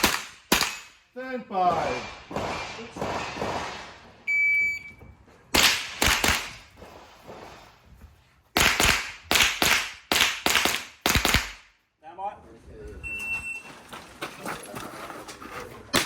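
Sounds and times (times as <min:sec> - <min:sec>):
rifle shots: 0:00.0 - 0:01.0, 0:01.6 - 0:04.1, 0:05.5 - 0:07.5, 0:08.6 - 0:11.7
shot timer beep: 0:04.3 - 0:05.0.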